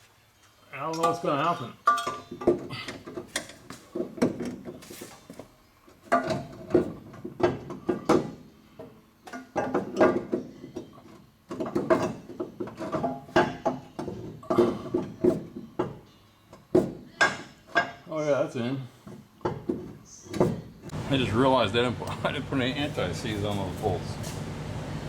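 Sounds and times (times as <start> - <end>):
metal tools clinking and knocking: 0.9 - 3.8.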